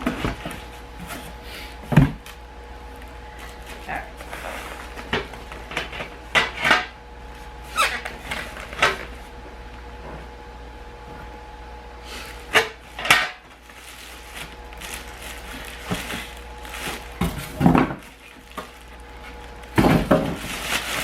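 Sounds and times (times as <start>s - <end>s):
box knocks and thumps: 16.9s - 18.8s, 19.7s - 20.6s.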